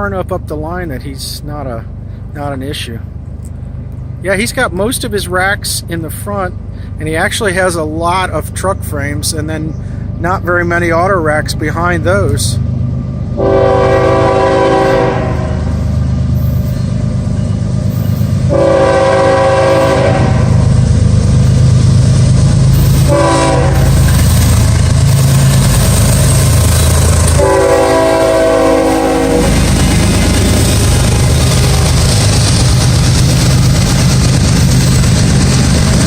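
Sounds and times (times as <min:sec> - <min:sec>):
locomotive engine rumble: 0:00.0 - 0:36.0
locomotive horn chord: 0:13.4 - 0:15.7, 0:18.5 - 0:20.6, 0:23.0 - 0:24.0, 0:27.4 - 0:29.7.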